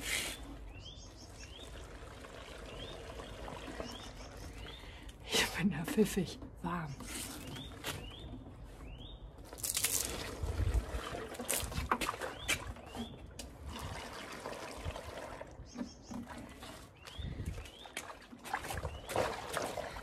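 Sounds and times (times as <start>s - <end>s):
water sloshing in rubber waders: 16.2s - 20.0s.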